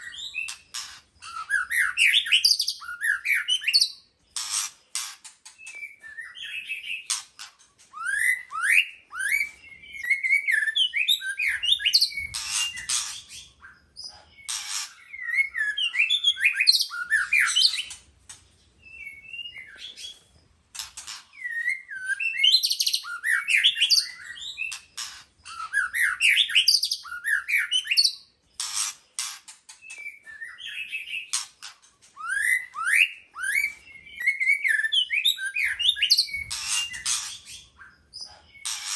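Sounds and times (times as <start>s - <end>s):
bird singing whistled sweeps: 21.4s - 24.8s, 32.2s - 38.7s.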